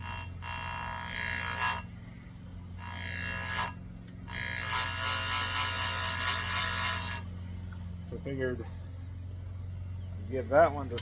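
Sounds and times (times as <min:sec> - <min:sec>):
grinding wheel on chain: 0:00.0 - 0:01.9, 0:02.8 - 0:07.3
motor humming: 0:00.0 - 0:10.3.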